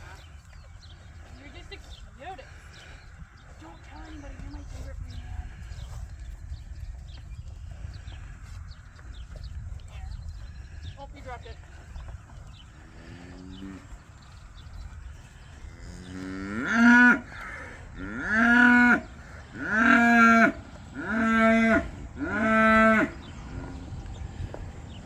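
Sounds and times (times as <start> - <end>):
cattle mooing: 15.8 - 24.0.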